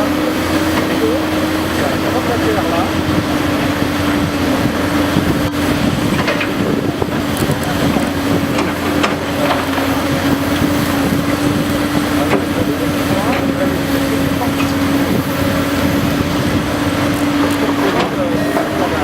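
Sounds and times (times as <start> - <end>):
excavator diesel engine running: 0.0 - 19.0
excavator knocks: 5.9 - 15.0, 17.1 - 19.0.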